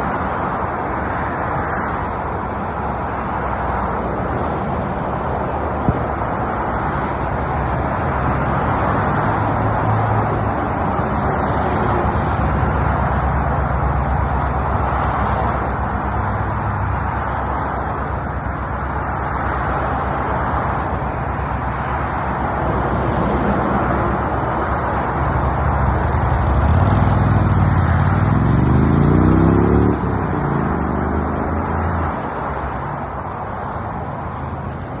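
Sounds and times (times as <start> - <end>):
highway traffic noise: 0.0 - 35.0
vehicle engine accelerating: 25.8 - 32.0.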